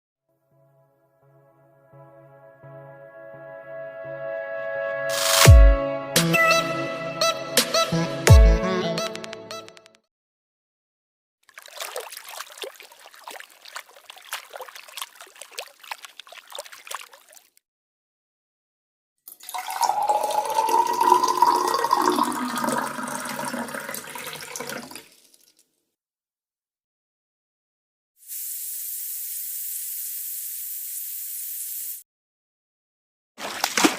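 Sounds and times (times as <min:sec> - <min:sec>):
trickling water: 0:11.4 - 0:17.6, 0:19.3 - 0:25.6
water pouring into container: 0:11.4 - 0:17.6, 0:19.3 - 0:25.6.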